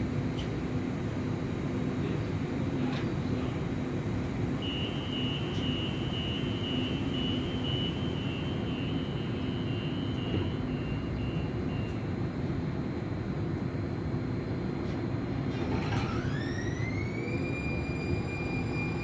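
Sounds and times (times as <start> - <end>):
train rumbling: 10.1 - 19.0.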